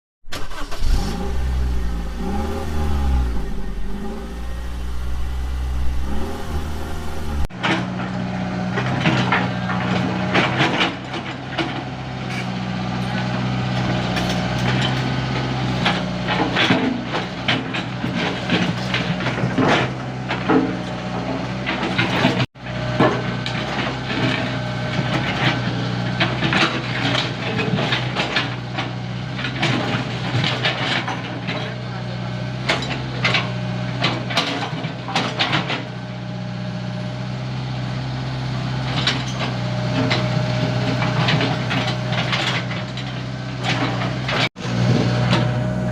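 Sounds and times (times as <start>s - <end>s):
excavator diesel engine running: 0.3s - 45.9s.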